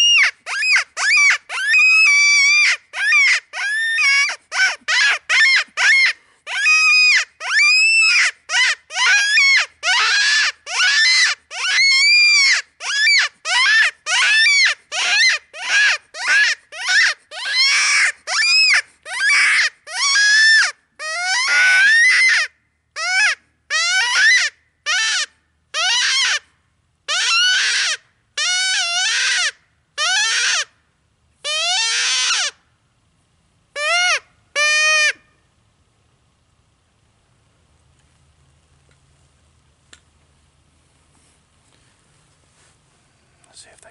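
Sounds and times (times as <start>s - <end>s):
predator call distress squeals: 0.0s - 26.5s, 27.1s - 30.7s, 31.4s - 32.6s, 33.8s - 35.3s.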